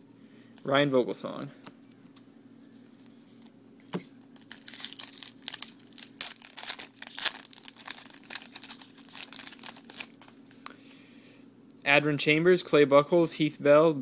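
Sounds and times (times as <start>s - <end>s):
wrapper tearing and crinkling: 4.4s - 10.4s.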